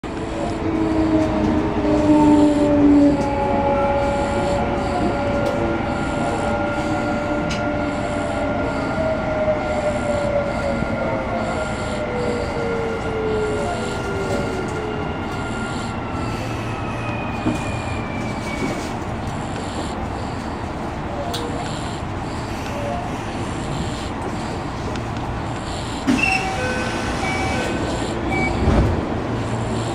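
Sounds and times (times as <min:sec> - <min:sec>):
train rumble inside carriage: 0:00.0 - 0:29.9
high wheel squeal: 0:02.1 - 0:19.0, 0:25.7 - 0:28.7.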